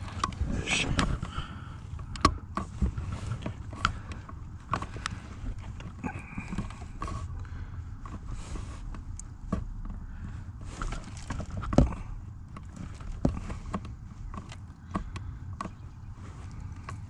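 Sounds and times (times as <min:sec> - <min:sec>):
low rumble: 0:00.0 - 0:06.9.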